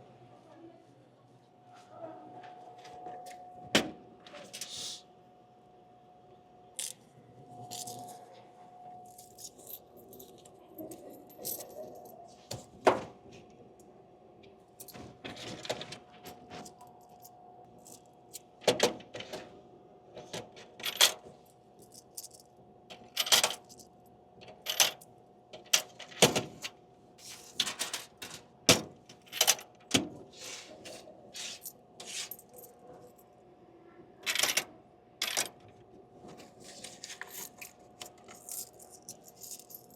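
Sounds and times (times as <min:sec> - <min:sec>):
faint machine hum: 0:00.0 - 0:39.9
coins clinking in a coin changer: 0:20.7 - 0:21.2, 0:21.9 - 0:23.8, 0:24.4 - 0:25.0, 0:27.5 - 0:28.4, 0:29.2 - 0:29.8, 0:34.2 - 0:35.6, 0:37.0 - 0:39.9.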